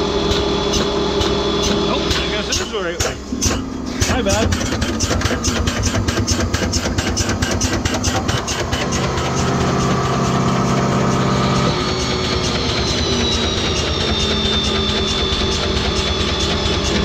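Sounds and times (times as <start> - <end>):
engine idling: 0.0 - 17.0
steady hum: 0.0 - 17.0
high falling whine: 7.8 - 17.0.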